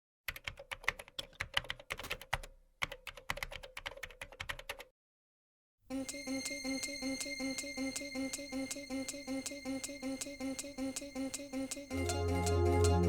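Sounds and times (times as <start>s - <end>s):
music: 11.9s - 13.0s.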